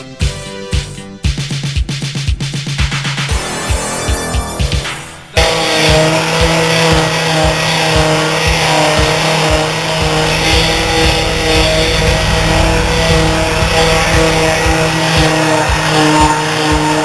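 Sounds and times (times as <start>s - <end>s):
car engine running: 5.9s - 16.2s.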